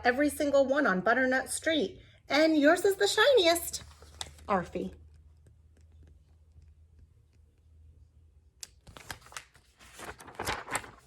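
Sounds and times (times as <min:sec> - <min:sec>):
faint low room hum: 0:00.0 - 0:11.0
book pages turning: 0:03.8 - 0:04.6, 0:08.6 - 0:11.0.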